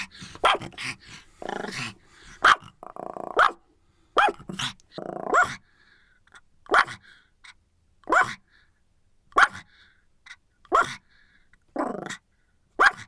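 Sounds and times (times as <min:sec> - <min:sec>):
dog barking: 0:00.0 - 0:02.7, 0:03.4 - 0:03.6, 0:04.2 - 0:04.5, 0:06.7 - 0:07.0, 0:12.8 - 0:13.0
dog growling: 0:00.0 - 0:03.5, 0:04.4 - 0:05.6.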